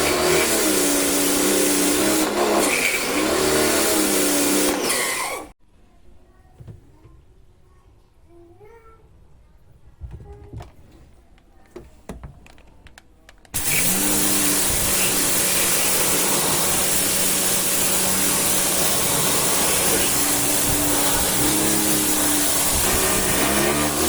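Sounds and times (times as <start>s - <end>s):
pressure washer motor and spray hiss: 0.0s - 5.5s, 13.6s - 24.0s.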